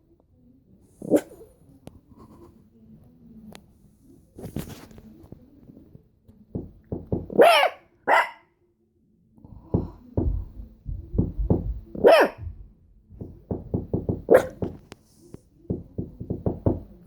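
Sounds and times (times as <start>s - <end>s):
dog barking: 1.0s - 1.5s, 7.3s - 8.6s, 12.0s - 12.6s, 14.3s - 14.7s
knocking raps: 6.5s - 7.4s, 9.6s - 14.9s, 15.7s - 17.0s.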